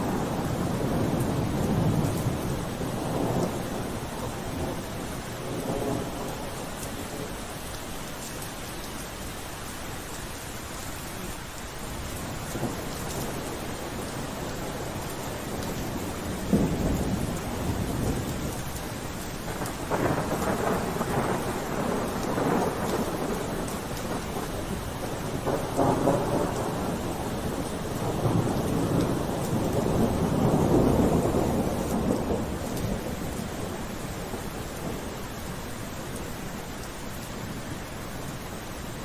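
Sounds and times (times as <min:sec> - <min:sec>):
steady rain falling: 0:00.0 - 0:39.0
thunder rolling: 0:19.5 - 0:35.2.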